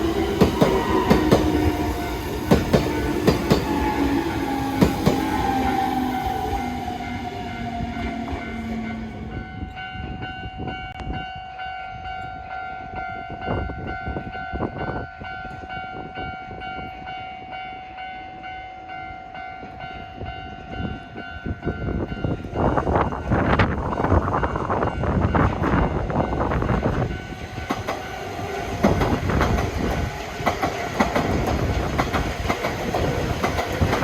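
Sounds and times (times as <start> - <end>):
wind gust on microphone: 0.0 - 11.5, 12.9 - 17.1, 19.9 - 34.0
train passing: 0.0 - 34.0
wheels clicking over rail joints: 27.6 - 34.0.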